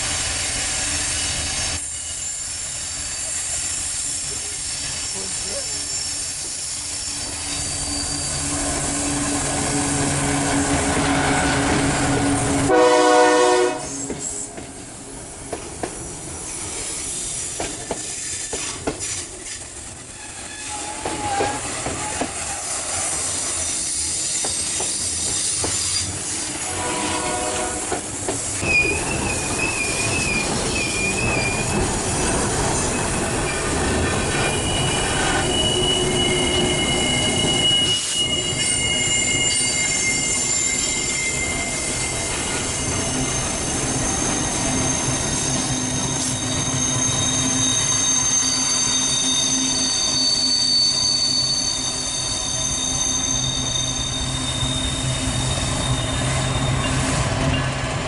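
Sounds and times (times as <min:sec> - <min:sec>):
train wheels rumbling on rail: 0:00.0 - 0:58.0
high wheel squeal: 0:00.8 - 0:14.5, 0:20.0 - 0:57.8
locomotive horn: 0:08.5 - 0:14.2, 0:26.6 - 0:28.0.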